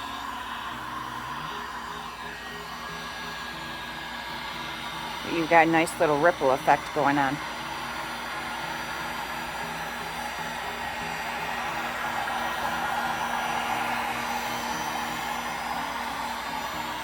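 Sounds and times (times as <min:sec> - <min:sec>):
heat gun blowing air: 0:00.0 - 0:17.0.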